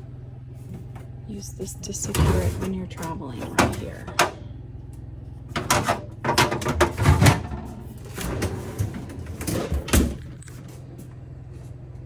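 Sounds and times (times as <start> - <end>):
steady low hum: 0.0 - 12.0
refrigerator door clicks and thumps: 5.5 - 10.4.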